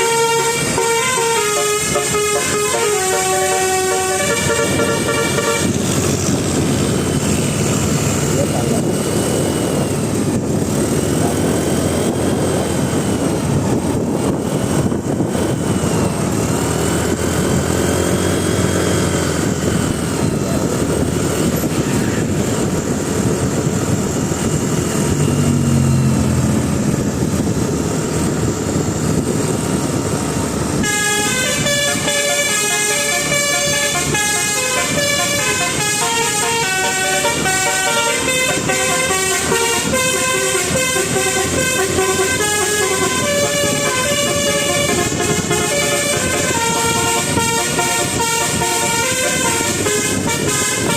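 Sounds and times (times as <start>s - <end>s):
faint rise-and-fall horn tones: 0.0s - 5.9s, 30.8s - 50.9s
musical bus horn playing tune: 0.0s - 6.7s, 30.7s - 50.9s
bus engine and road noise: 0.0s - 50.9s.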